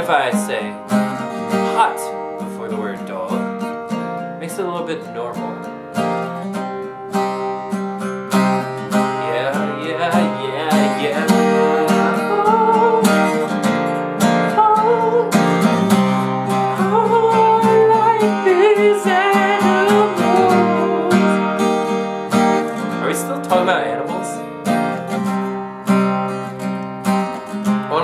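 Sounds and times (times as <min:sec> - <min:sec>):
acoustic guitar strumming: 0:00.0 - 0:28.0
wordless vocal melody: 0:08.7 - 0:25.4.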